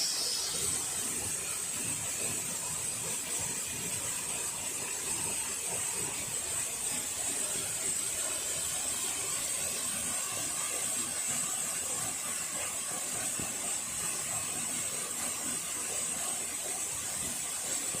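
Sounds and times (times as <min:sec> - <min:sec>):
high-pitched hiss: 0:00.0 - 0:01.6.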